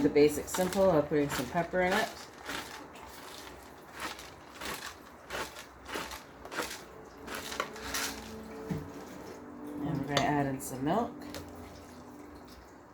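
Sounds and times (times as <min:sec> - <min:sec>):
pepper mill grinding: 0:00.0 - 0:09.3.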